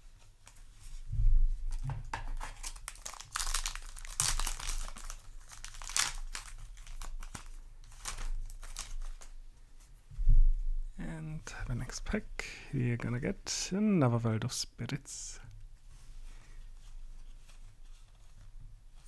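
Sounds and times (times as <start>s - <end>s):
foil wrapper crinkling and tearing: 2.2s - 9.4s.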